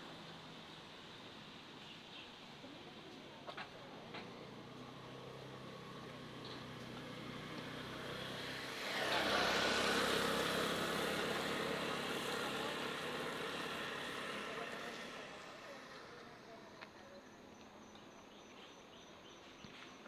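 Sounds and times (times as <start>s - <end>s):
vehicle passing by: 4.1s - 16.6s.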